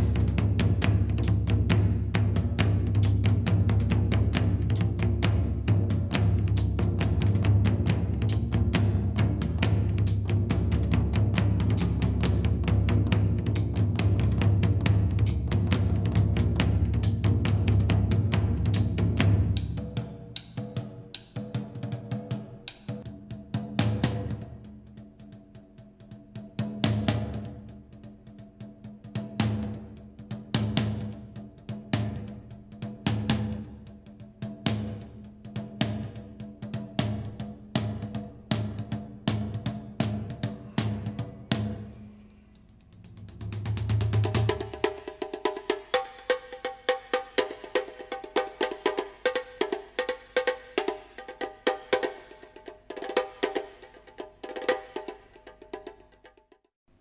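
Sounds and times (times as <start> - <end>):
instrumental music with heavy drums: 0.0 - 56.6.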